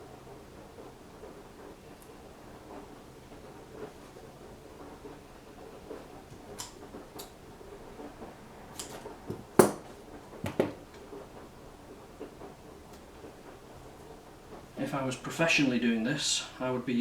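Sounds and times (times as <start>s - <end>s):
small clicks and taps: 5.9s - 7.4s.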